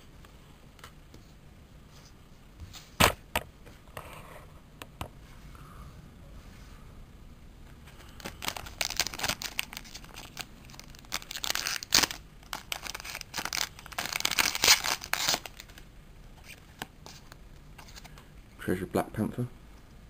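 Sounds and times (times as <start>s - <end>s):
wrapper tearing and crinkling: 8.2s - 15.8s.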